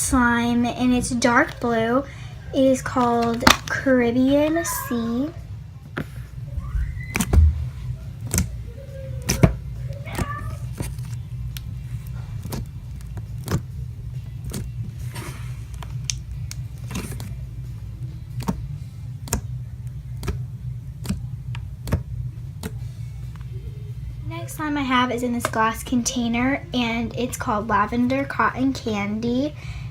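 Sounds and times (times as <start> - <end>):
steady low hum: 0.0 - 29.9
slime squishing and popping: 7.0 - 8.6, 18.3 - 22.8.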